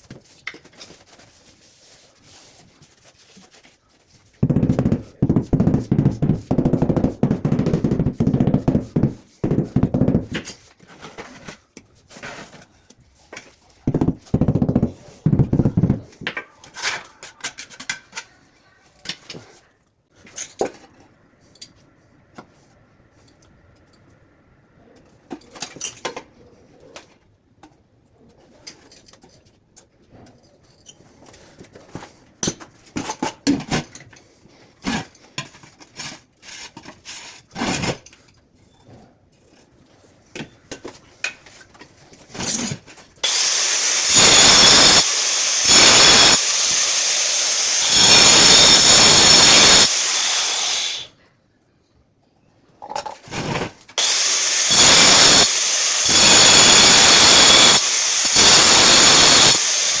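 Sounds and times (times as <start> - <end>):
hand tools knocking on tile: 4.4 - 10.4, 13.9 - 16.4
power tool whining: 43.2 - 51.1, 54.0 - 60.0.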